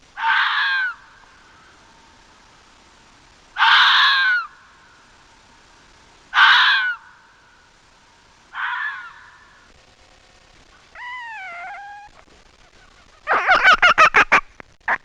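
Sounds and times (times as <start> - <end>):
fox harsh cry: 0.2 - 1.0, 3.6 - 4.5, 6.3 - 7.0, 8.5 - 9.4, 10.9 - 12.2
fox yelping barks: 0.2 - 1.0, 6.3 - 7.0, 10.9 - 12.3
fox whining call: 10.8 - 13.6.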